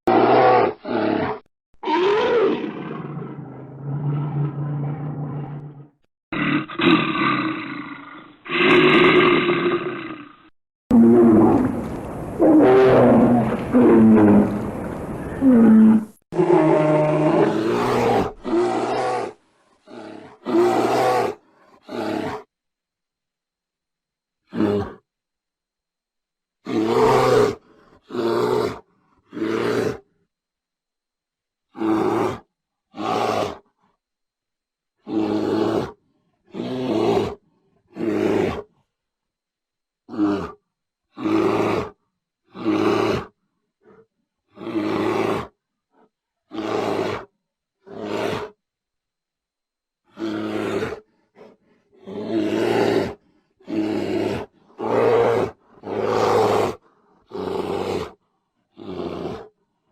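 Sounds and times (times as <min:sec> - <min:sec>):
bear roaring: 0:00.1 - 0:22.5, 0:26.7 - 0:30.0, 0:31.8 - 0:33.6, 0:35.0 - 0:38.7, 0:41.2 - 0:44.0, 0:44.6 - 0:45.6, 0:46.5 - 0:48.6, 0:50.1 - 0:58.0.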